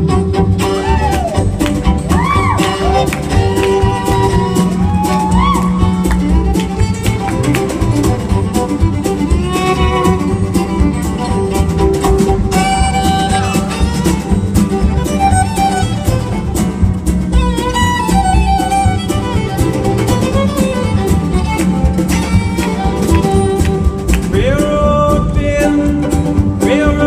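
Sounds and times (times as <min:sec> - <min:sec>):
acoustic guitar accompaniment: 0:00.0 - 0:27.0
fiddle sliding notes: 0:00.0 - 0:27.0.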